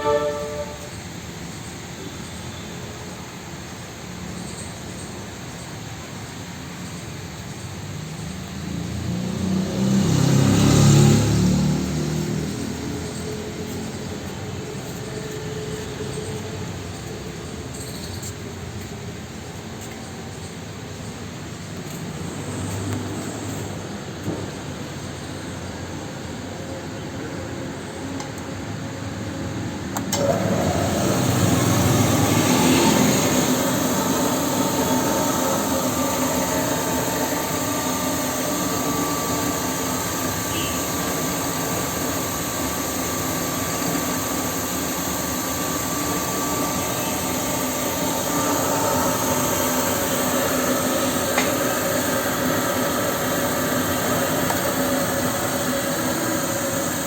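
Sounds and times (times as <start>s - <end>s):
steady whine: 0.0s - 1.6s, 30.0s - 57.0s
grinder machine running: 9.1s - 16.6s, 30.0s - 57.0s.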